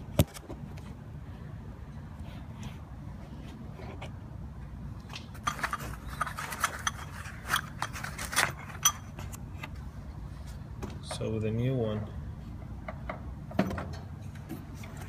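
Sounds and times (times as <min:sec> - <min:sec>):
clicks and scrapes of small parts: 0:05.0 - 0:09.8.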